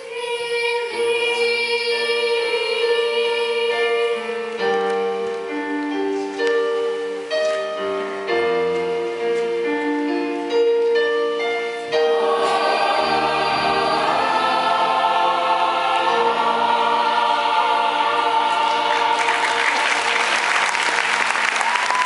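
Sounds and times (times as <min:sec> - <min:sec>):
choir singing a chord: 0:11.9 - 0:21.2
applause: 0:19.2 - 0:22.0.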